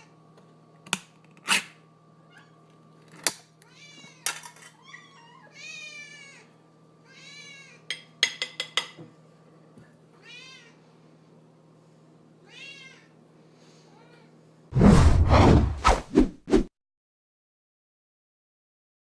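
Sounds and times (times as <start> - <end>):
cat meowing: 10.2 - 10.8, 12.4 - 13.1.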